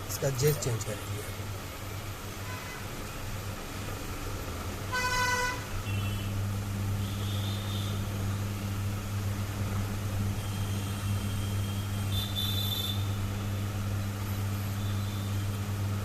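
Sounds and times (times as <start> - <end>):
low electrical hum with hiss: 0.0 - 5.0.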